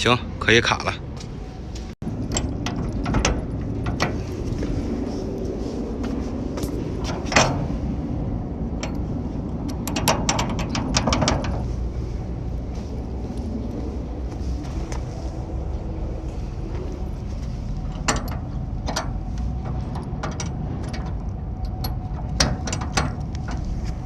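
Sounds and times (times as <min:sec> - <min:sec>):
steady low rumble: 0:00.0 - 0:24.0
rattling metal clacks: 0:02.0 - 0:04.6, 0:09.7 - 0:11.8, 0:17.8 - 0:24.0.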